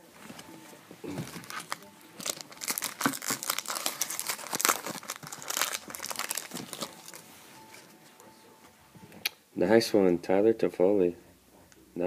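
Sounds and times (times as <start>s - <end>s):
wrapper tearing and crinkling: 1.1s - 7.2s.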